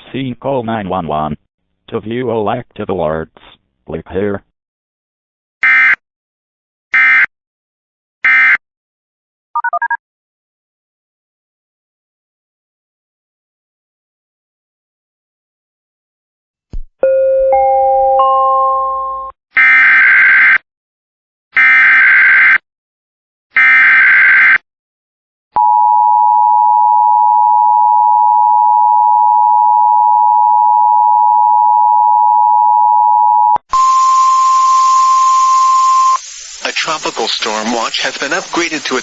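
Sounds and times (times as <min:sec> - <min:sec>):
two-tone attention signal: 0:33.7 - 0:36.2
data bursts: 0:33.7 - 0:39.0
radio hiss: 0:36.0 - 0:39.0.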